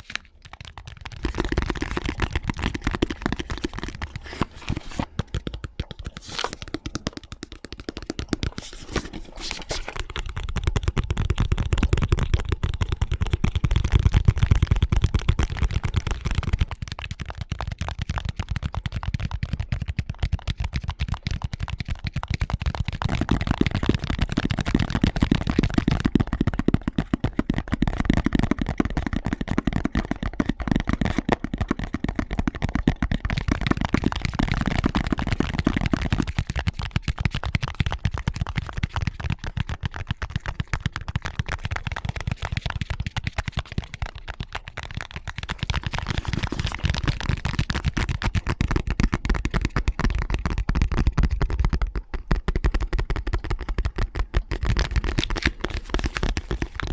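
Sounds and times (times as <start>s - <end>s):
fast asmr tapping: 0.0s - 56.9s.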